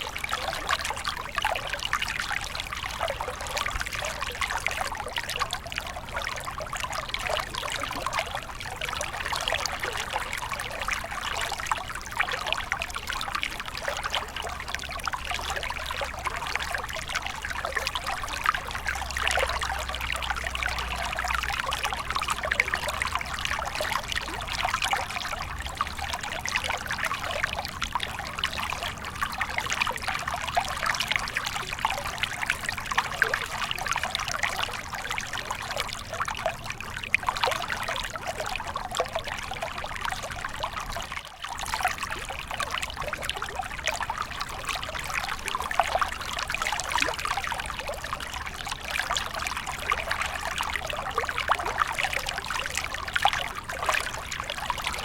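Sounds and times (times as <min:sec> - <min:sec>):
stream babbling over stones: 0:00.0 - 0:55.0.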